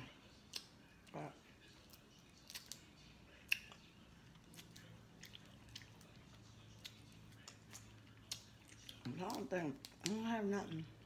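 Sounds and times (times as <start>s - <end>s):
wet mouth clicks of chewing: 1.9s - 10.2s.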